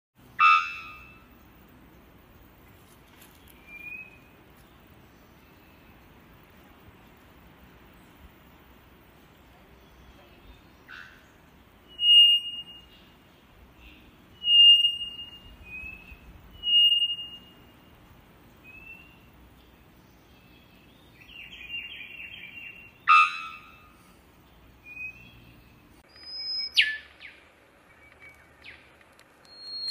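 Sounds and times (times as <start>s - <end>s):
songbirds singing: 0.2s - 29.9s.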